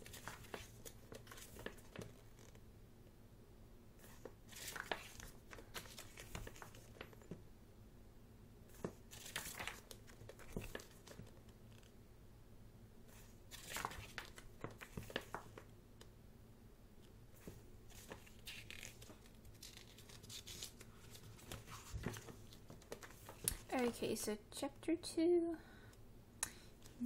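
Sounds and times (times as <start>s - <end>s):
paper pages turning: 0.0s - 2.6s, 4.0s - 7.4s, 8.7s - 11.9s, 13.1s - 15.7s, 17.4s - 23.8s.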